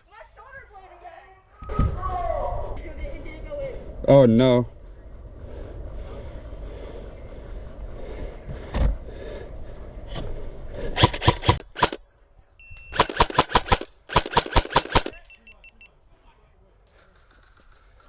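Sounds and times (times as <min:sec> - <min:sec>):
airsoft rifle bursts: 0:11.1 - 0:12.0, 0:12.9 - 0:15.3.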